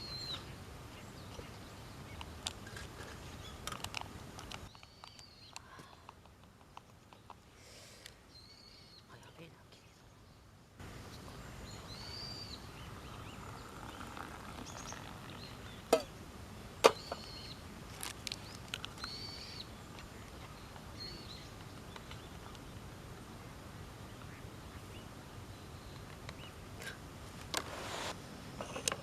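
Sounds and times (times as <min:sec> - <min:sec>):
bird calls: 0:00.0 - 0:03.8, 0:04.5 - 0:06.1, 0:11.0 - 0:16.2, 0:16.8 - 0:17.6, 0:18.2 - 0:22.8
outdoor background hum: 0:00.0 - 0:29.0.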